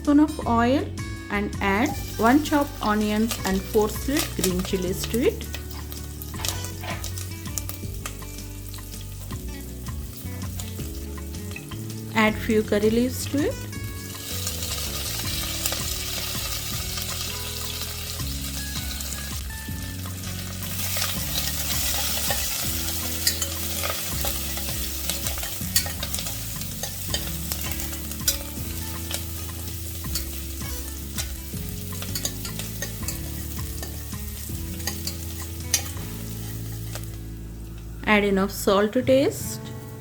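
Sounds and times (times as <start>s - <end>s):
vegetables sizzling in hot oil: 1.8s - 37.8s
spoon clicking against pot: 32.0s - 34.0s.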